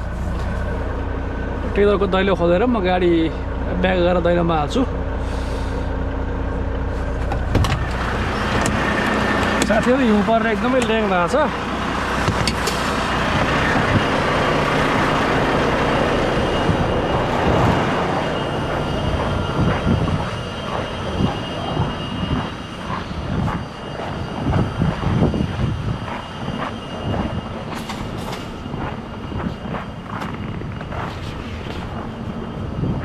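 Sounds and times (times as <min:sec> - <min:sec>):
continuous rumbling noise: 0:00.0 - 0:33.0
footsteps crunching on snow: 0:22.4 - 0:32.4.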